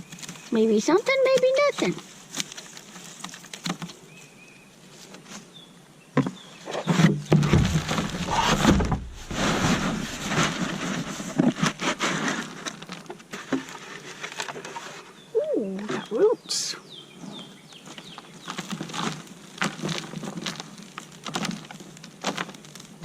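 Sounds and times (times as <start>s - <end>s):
soil rustling and scraping: 0.0s - 5.7s, 6.4s - 16.3s, 17.2s - 23.0s
dirt crumbling with small knocks: 0.0s - 16.3s, 17.4s - 23.0s
low rumble: 7.6s - 10.8s.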